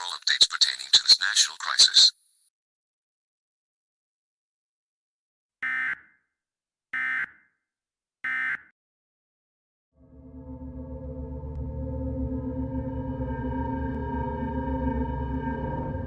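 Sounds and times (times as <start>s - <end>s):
low droning music: 10.0s - 16.0s.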